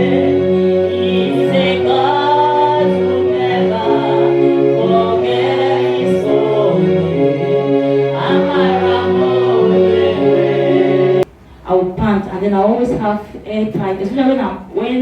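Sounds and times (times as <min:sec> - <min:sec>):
gospel voices singing over chords: 0:00.0 - 0:11.3.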